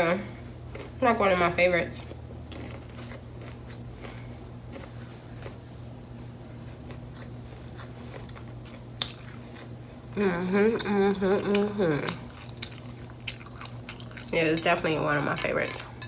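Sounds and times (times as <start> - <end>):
person chewing crunchy taco: 0.6 - 1.0, 2.1 - 5.8, 6.5 - 10.2, 11.4 - 14.7.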